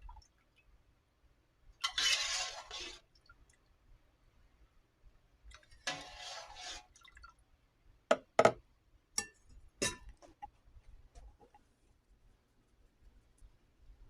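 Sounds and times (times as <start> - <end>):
kitchenware scraping: 1.8 - 3.0, 5.9 - 6.8
dishes and utensils clinking: 9.2 - 10.3.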